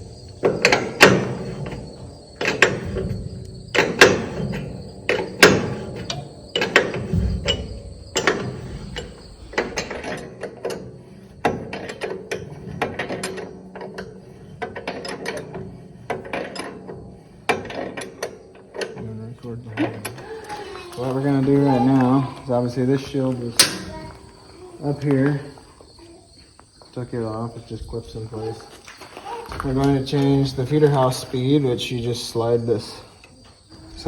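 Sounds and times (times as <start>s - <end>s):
metal knocks: 0.0s - 20.4s, 21.2s - 25.3s.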